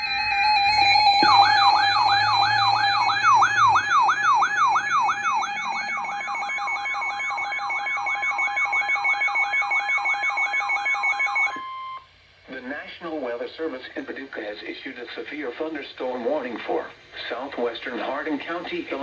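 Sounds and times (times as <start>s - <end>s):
whooping alert tone: 0.0s - 11.6s
steady high tones: 0.0s - 12.0s.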